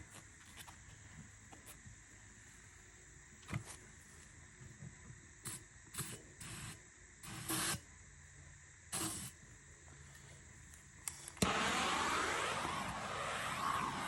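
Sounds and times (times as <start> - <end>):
aerosol spray hissing: 5.5 - 7.8, 8.9 - 9.4, 11.4 - 14.0.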